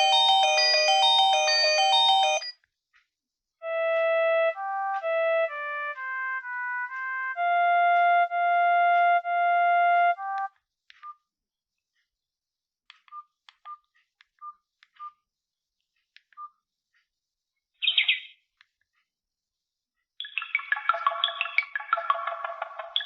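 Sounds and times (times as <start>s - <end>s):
synthesized ringtone melody: 0.0s - 2.5s, 3.6s - 10.5s, 20.6s - 23.0s
loud ringtone: 0.0s - 2.6s.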